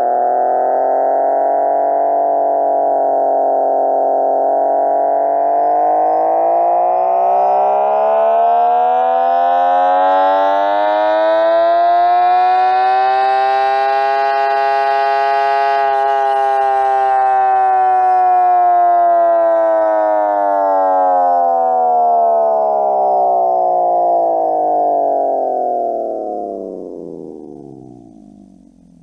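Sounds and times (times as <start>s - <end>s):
buzzy artificial engine tone: 0.0s - 21.0s.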